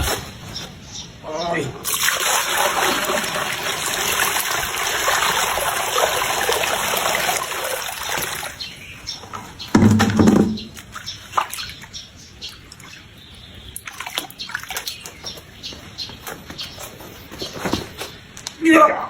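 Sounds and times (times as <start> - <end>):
water spraying and splashing: 1.8 - 8.7.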